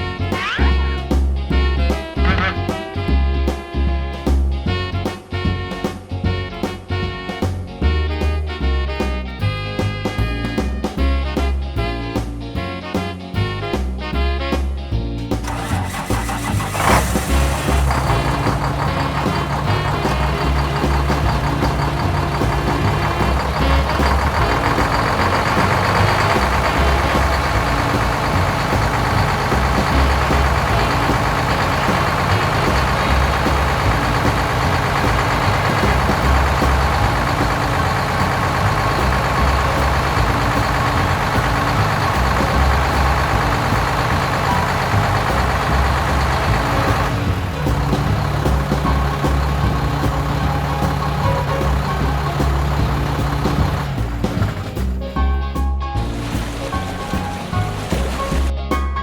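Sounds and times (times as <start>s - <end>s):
heavy vehicle engine rumbling: 0.0s - 3.5s, 15.3s - 58.9s.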